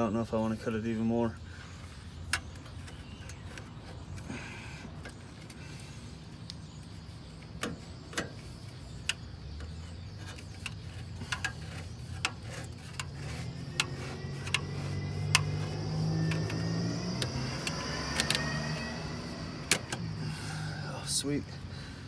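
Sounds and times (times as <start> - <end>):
low hum: 2.8 - 22.0
metal clicks and knocks: 7.3 - 18.6.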